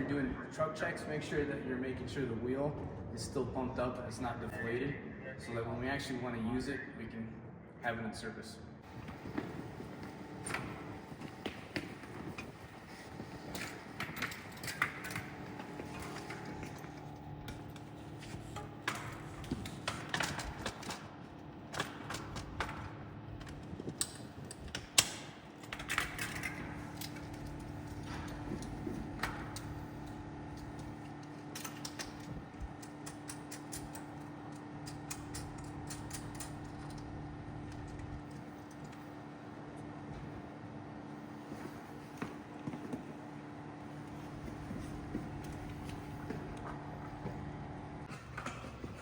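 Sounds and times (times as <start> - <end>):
steady low hum: 0.0 - 49.0
metal equipment clicking and rattling: 9.1 - 21.1, 23.4 - 37.1.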